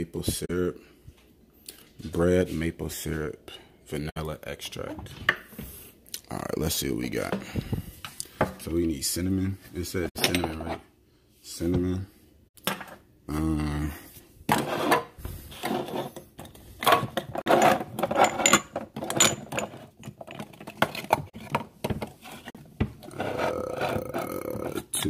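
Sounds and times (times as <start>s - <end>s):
jars and bottles clinking: 15.8s - 21.6s.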